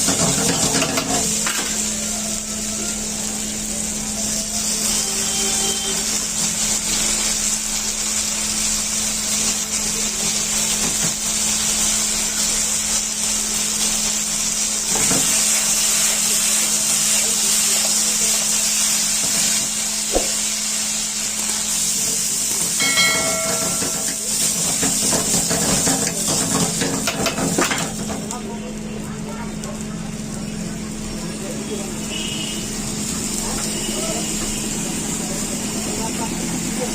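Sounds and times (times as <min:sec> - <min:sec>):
wok hissing over gas flame: 0:00.0 - 0:36.9
utensils knocking: 0:22.8 - 0:27.8.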